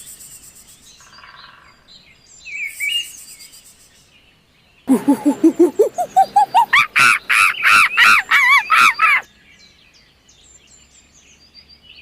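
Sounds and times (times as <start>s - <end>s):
faint bird chirping: 0.0s - 9.3s
animal calling loudly: 4.9s - 9.2s.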